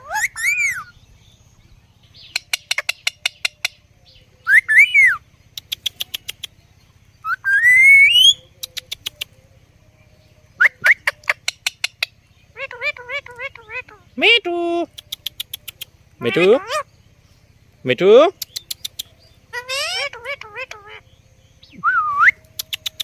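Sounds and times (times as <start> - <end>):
parrot shrill whistled calls: 0.0 - 1.0, 4.4 - 5.2, 7.2 - 8.5, 16.2 - 16.9, 19.5 - 21.0
parrot sharp clicks: 18.4 - 19.1.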